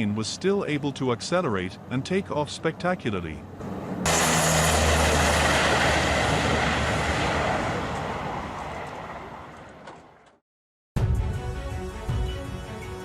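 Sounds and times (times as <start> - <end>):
aircraft engine during takeoff: 3.5 - 10.4.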